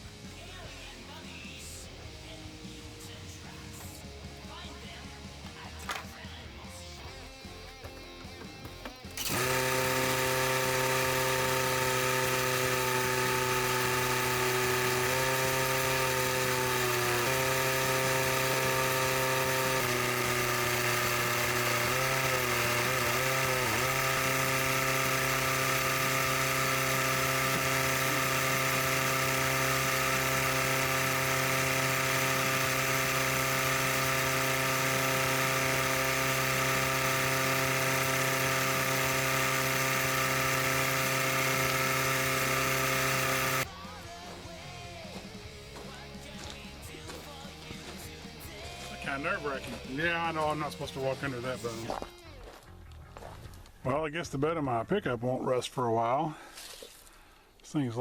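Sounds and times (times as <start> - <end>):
motor running steadily: 0.0 - 43.7.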